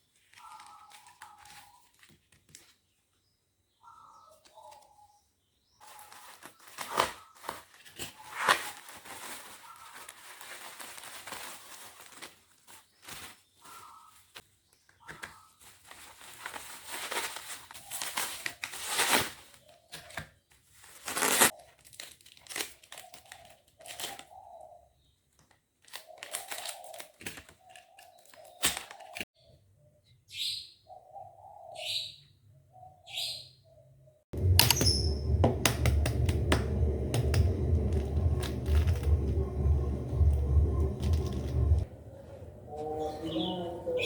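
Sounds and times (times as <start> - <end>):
packaging crinkling and rustling: 0.1 - 2.9, 5.8 - 14.5, 15.2 - 24.4, 25.4 - 29.2
packaging tearing: 16.7 - 19.6, 20.9 - 24.3.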